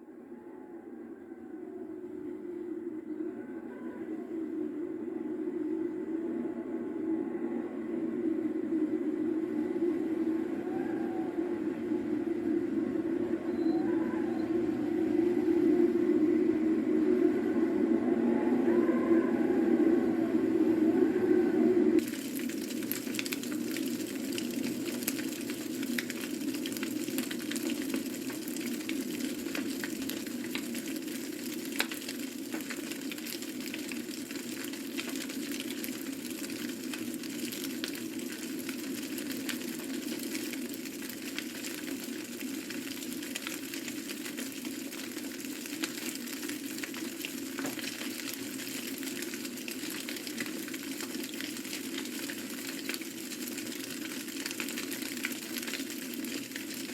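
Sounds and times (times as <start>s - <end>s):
fire crackling and popping: 22.0s - 56.9s.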